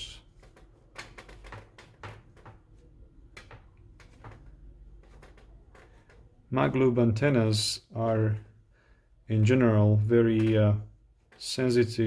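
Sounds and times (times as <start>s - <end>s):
small clicks and scrapes of handling: 0.2s - 6.4s.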